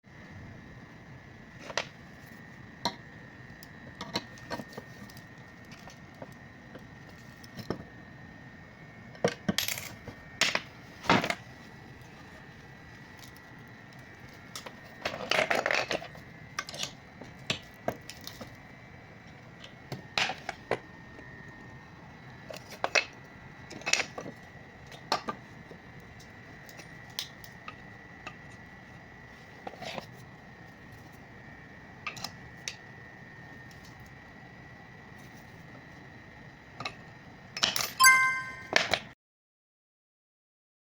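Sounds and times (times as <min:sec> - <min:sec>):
faint steady high tone: 0:38.0 - 0:39.0.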